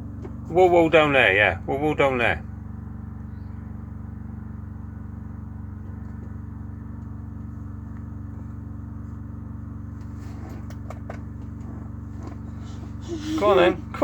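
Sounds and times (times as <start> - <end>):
aircraft piston engine idling: 0.0 - 14.0.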